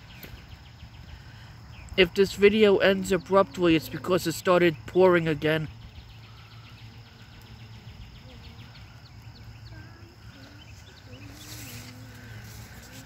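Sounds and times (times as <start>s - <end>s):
bird chirps: 0.0s - 13.0s
distant voices: 0.0s - 13.0s
steady low hum: 0.0s - 13.0s.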